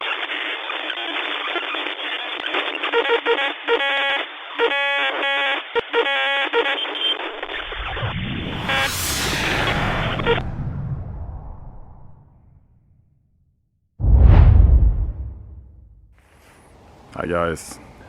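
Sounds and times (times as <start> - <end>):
radio static crackling: 7.0 - 8.7.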